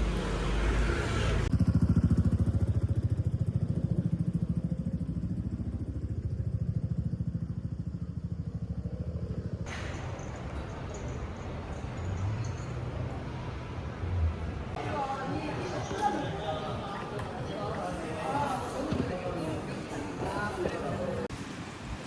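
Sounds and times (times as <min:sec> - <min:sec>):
rumbling road noise: 0:00.0 - 0:01.9, 0:09.7 - 0:16.6.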